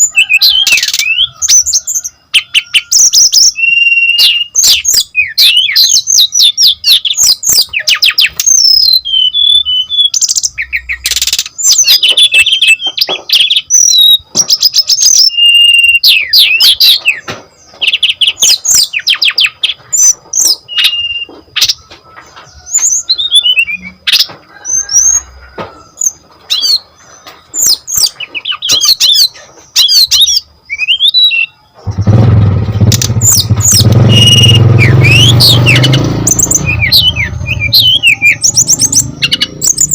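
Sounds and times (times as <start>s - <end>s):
bird singing chirps and trills: 0.0s - 39.9s
loud low rumble: 31.9s - 39.9s.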